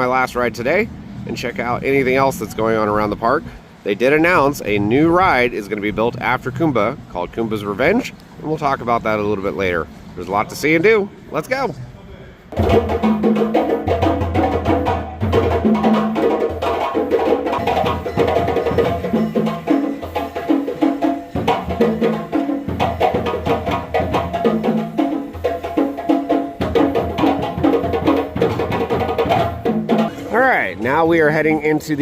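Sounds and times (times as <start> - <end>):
wood-block-like percussion: 12.5 - 31.0.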